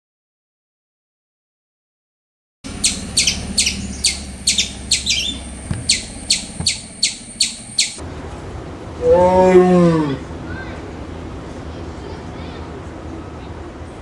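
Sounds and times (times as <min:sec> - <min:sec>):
bird chirping: 0:02.7 - 0:08.0
drawn-out animal call: 0:02.7 - 0:08.0.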